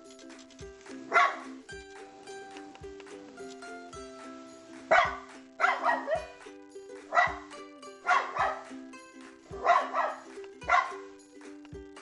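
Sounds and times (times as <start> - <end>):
background music: 0.0 - 12.0
dog barking loudly: 1.1 - 1.4, 4.9 - 6.3, 7.1 - 7.4, 8.0 - 8.6, 9.6 - 11.0.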